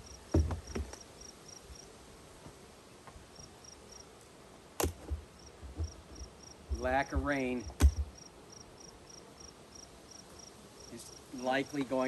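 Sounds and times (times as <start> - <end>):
insect chirping: 0.0 - 1.9, 3.3 - 4.1, 4.8 - 11.7
sharp knocks: 4.8 - 8.1.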